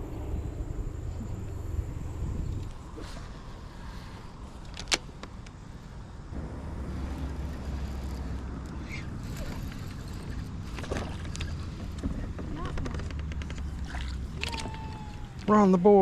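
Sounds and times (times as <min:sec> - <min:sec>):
water rumble: 0:00.0 - 0:04.6, 0:05.9 - 0:16.0
wind on microphone: 0:00.0 - 0:04.6.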